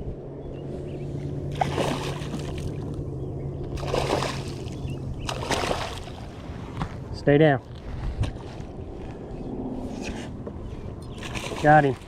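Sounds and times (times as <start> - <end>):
water splashing: 1.5 - 3.0, 3.7 - 6.5, 11.2 - 12.0.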